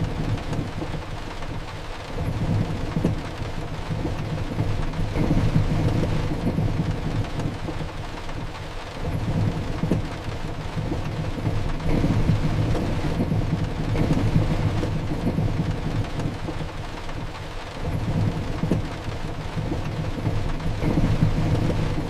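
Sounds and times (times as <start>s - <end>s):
heavy rain: 0.0s - 22.0s
rolling thunder rumble: 2.2s - 7.9s, 9.0s - 22.0s.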